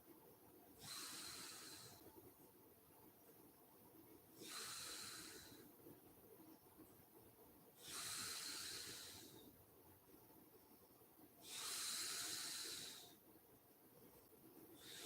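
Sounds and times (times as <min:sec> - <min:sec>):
woman breathing in sleep: 0:00.8 - 0:02.1, 0:04.4 - 0:05.7, 0:07.8 - 0:09.5, 0:11.4 - 0:13.2, 0:14.8 - 0:15.0.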